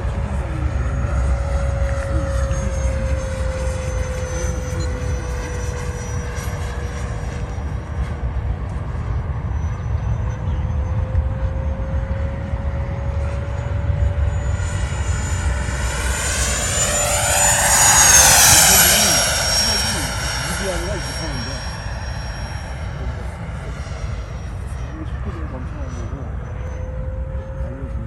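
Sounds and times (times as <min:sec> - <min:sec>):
model jet fans whining: 0:00.0 - 0:28.0
low rumble: 0:07.0 - 0:28.0
jet whoosh passing: 0:13.7 - 0:25.2.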